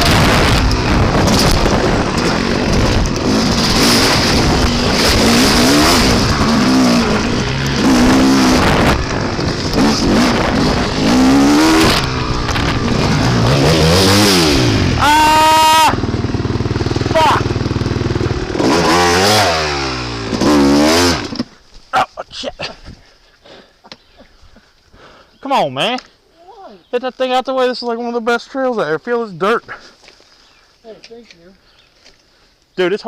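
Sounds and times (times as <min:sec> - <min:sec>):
wind noise on microphone: 0:00.0 - 0:13.6
dirt bike engine revving: 0:00.0 - 0:21.5.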